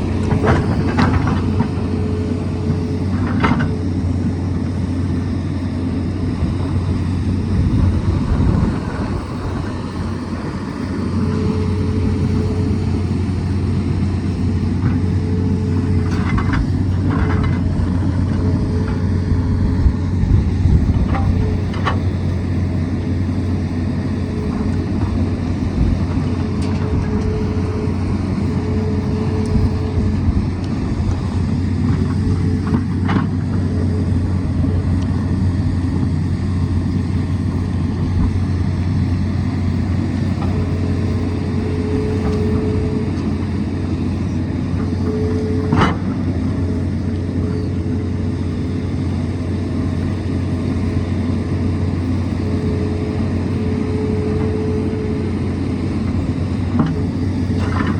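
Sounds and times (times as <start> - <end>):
high whine: 0.0 - 50.0
excavator diesel engine running: 0.0 - 57.9.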